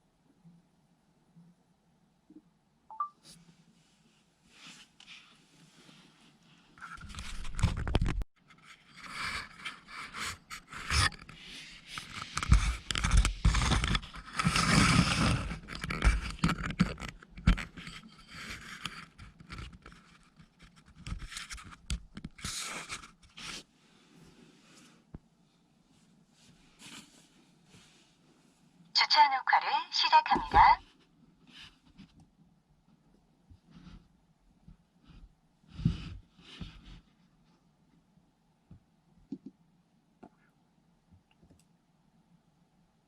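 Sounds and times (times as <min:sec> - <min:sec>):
scraping and rubbing: 0:04.5 - 0:25.0.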